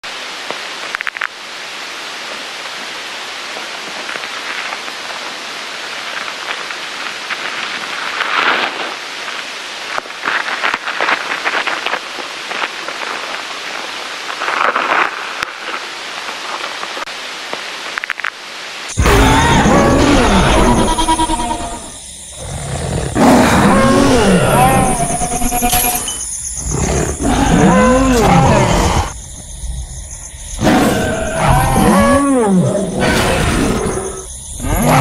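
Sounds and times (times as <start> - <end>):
steady rushing hiss: 0.1 - 19.3, 20.2 - 32.9.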